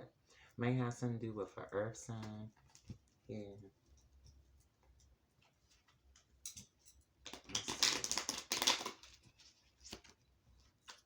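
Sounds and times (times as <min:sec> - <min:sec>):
cards being shuffled: 0:07.3 - 0:10.2.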